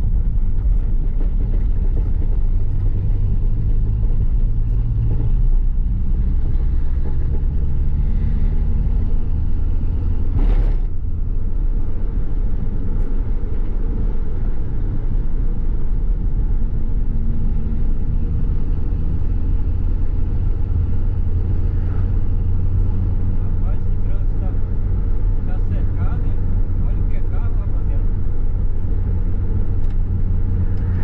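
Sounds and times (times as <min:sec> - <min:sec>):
car engine droning: 0:00.0 - 0:31.0.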